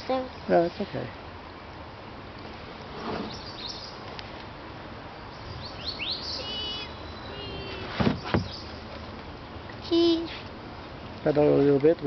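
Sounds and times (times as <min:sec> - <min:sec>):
outdoor background hiss: 0:00.0 - 0:12.0
songbirds chirping and whistling: 0:02.9 - 0:04.1, 0:05.2 - 0:09.0.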